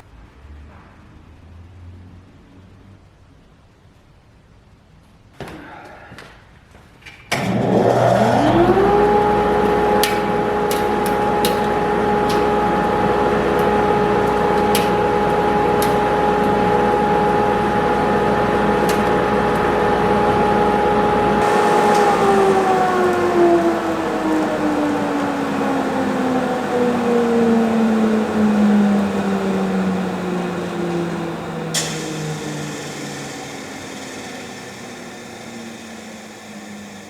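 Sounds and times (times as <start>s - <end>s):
dust collector motor hum: 7.4s - 37.0s.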